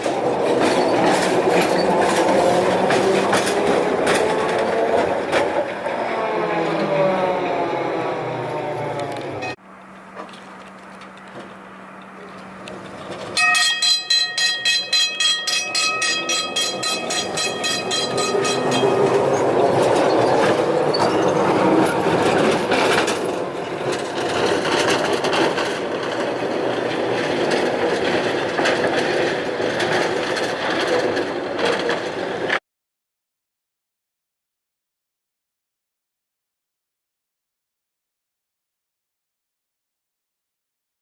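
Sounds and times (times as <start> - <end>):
tram wheels on rails: 0.0 - 32.6
tram warning bell ringing: 9.3 - 9.6, 13.3 - 24.8.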